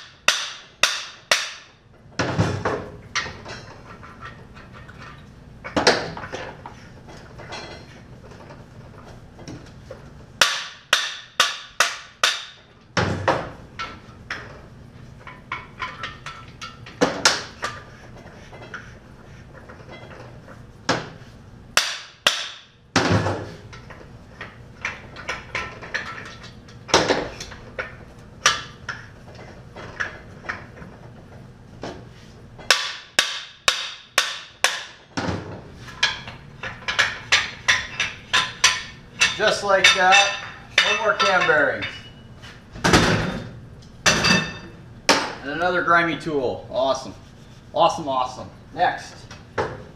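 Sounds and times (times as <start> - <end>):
hammer striking metal tool: 0.0 - 1.8, 10.4 - 12.6, 21.8 - 22.7, 32.7 - 35.0.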